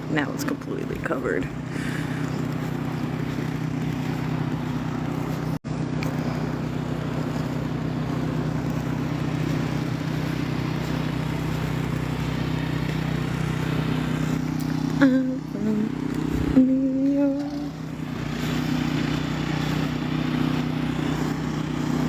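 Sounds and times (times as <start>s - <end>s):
steady engine hum: 0.0s - 22.0s.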